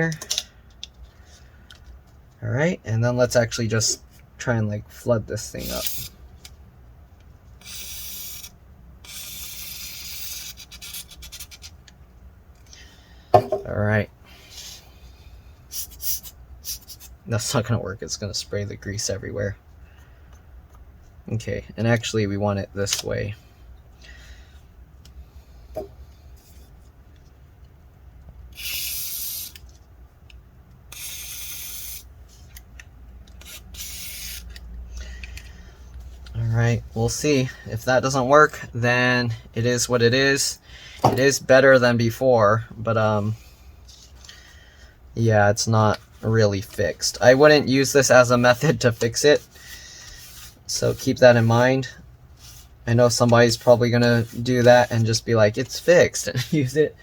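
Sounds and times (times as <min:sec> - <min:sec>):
spray can hissing: 0:28.6 - 0:29.5.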